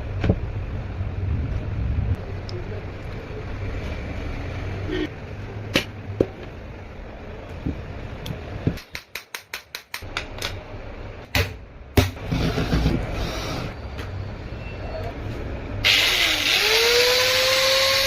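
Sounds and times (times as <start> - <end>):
sharp clicks and knocks: 7.6 - 10.6
angle grinder motor whining: 15.8 - 18.0.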